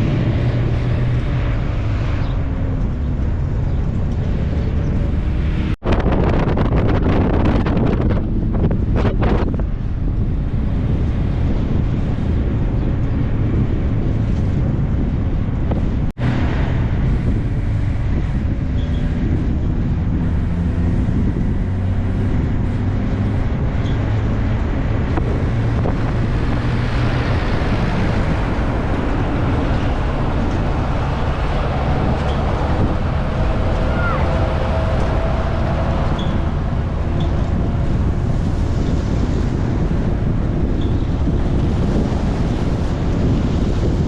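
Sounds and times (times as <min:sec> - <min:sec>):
car engine and road noise: 0:00.0 - 0:44.0
wind buffeting microphone: 0:00.0 - 0:44.0.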